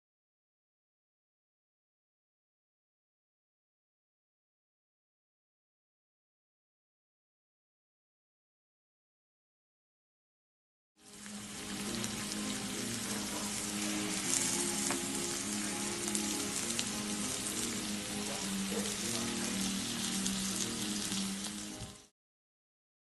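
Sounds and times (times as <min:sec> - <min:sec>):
meat sizzling: 0:11.0 - 0:22.1.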